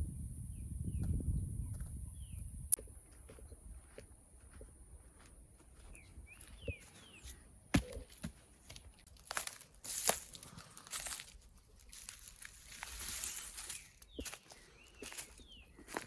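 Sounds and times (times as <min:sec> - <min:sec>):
bird chirping: 0:00.5 - 0:04.0, 0:05.1 - 0:08.0, 0:13.1 - 0:16.0
rustling and crinkling: 0:07.2 - 0:16.0.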